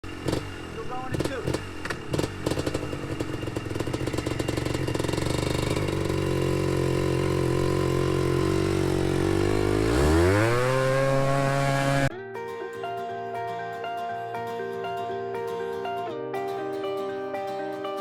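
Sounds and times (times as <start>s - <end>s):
atv engine revving: 0.0s - 12.1s.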